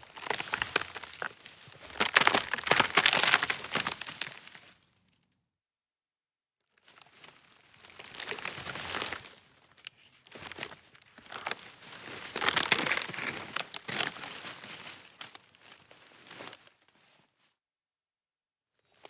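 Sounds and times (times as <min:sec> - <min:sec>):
wood cracking and splintering: 0:00.0 - 0:04.6, 0:12.2 - 0:14.3.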